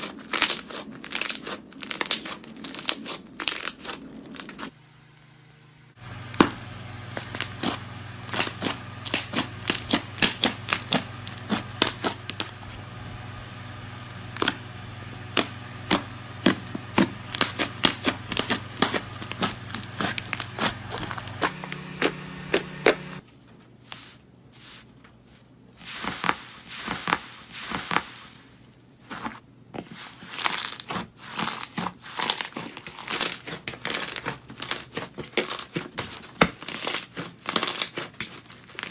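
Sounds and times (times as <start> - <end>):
slime crackling and popping: 0.2 - 4.7, 7.2 - 12.6, 36.6 - 38.9.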